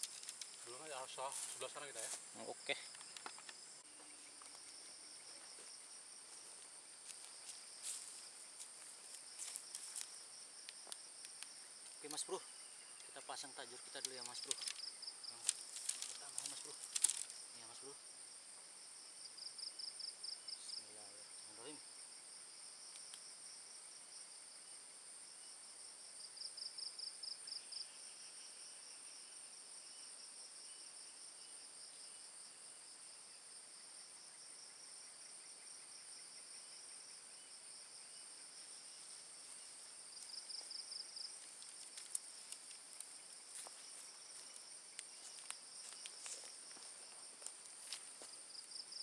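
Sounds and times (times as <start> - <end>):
faint clicks and rustles: 0.0 - 3.7, 13.8 - 17.5, 40.1 - 48.7
night insects chorus: 0.0 - 49.0
pulsing insect trill: 0.0 - 49.0.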